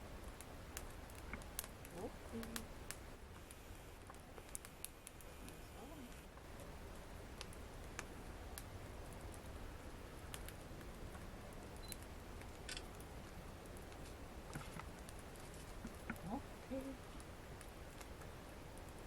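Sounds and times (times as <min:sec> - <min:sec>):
low steady hiss: 0:00.0 - 0:19.0
fire pops and snaps: 0:00.2 - 0:19.0.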